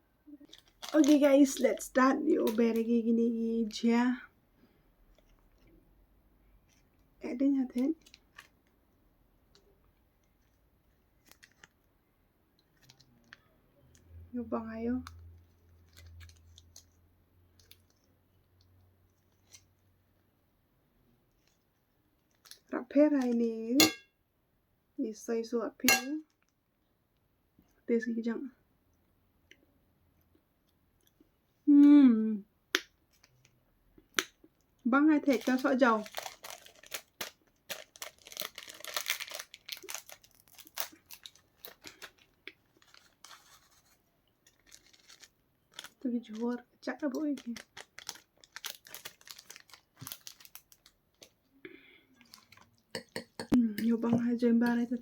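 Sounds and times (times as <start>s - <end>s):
plastic packaging crinkling: 0.4s - 3.0s, 9.5s - 11.9s, 12.7s - 13.4s, 15.0s - 17.0s, 22.2s - 23.3s, 35.1s - 51.4s, 52.2s - 52.8s.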